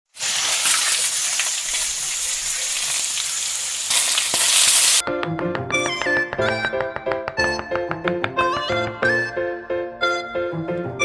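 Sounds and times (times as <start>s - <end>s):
food sizzling in frying: 0.1s - 5.0s
light plucked instrumental music: 5.0s - 11.0s.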